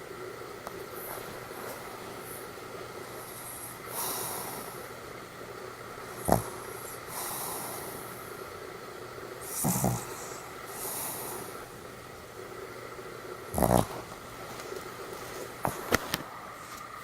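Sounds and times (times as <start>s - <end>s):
dog snoring: 0.8s - 4.9s, 6.0s - 8.2s, 9.4s - 11.7s, 13.5s - 14.2s
dog hissing breaths: 1.0s - 4.9s, 6.1s - 8.3s, 9.4s - 11.7s.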